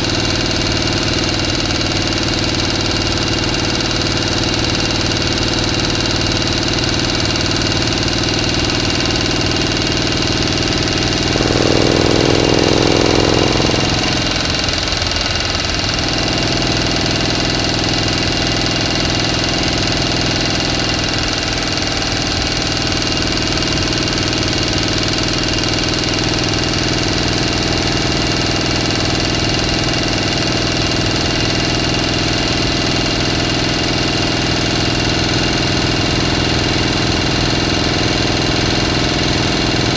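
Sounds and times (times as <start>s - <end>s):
motor humming: 10.8s - 14.8s.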